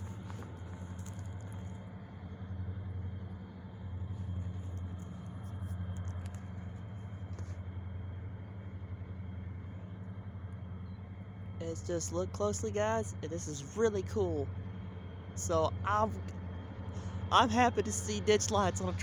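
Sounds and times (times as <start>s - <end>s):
locomotive engines rumbling: 0.0s - 19.0s.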